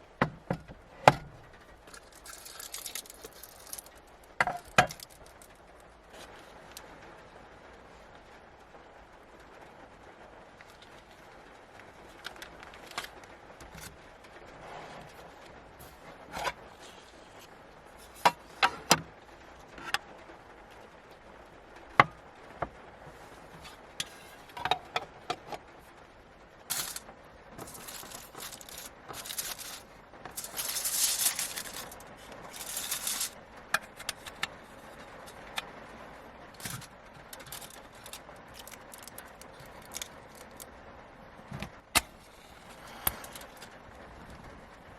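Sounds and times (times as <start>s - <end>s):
rustling and scraping: 0.0s - 6.9s, 10.6s - 20.1s, 26.6s - 35.7s, 36.5s - 40.7s, 41.5s - 44.6s
small objects clicking and knocking: 1.8s - 5.5s, 26.7s - 35.7s, 36.5s - 40.7s.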